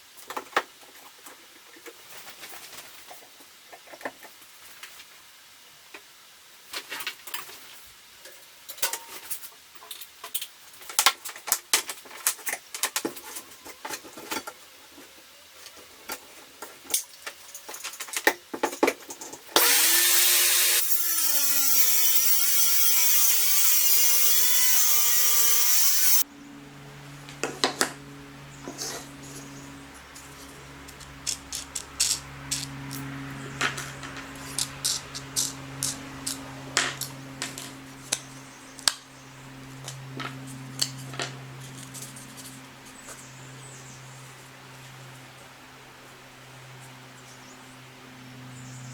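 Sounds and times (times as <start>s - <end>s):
circular saw cutting: 19.6s - 38.3s.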